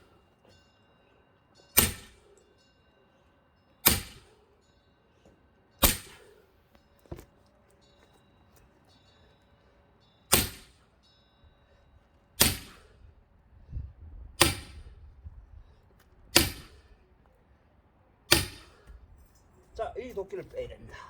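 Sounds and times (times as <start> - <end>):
axe blows splitting a log: 12.4 - 12.8.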